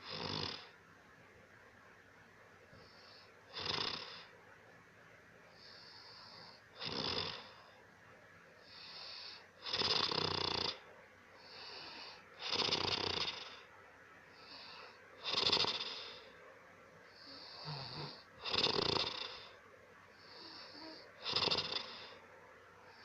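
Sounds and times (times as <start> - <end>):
person snoring heavily: 0.0 - 0.7, 2.9 - 4.3, 5.6 - 7.6, 8.7 - 10.8, 11.4 - 13.7, 14.4 - 16.3, 17.2 - 19.6, 20.2 - 22.2.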